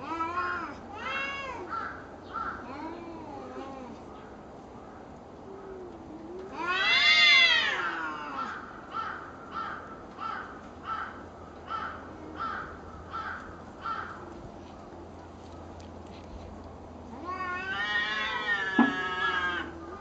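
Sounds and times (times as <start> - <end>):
cats yowling: 0.0 - 4.1, 5.6 - 9.2, 17.0 - 20.0.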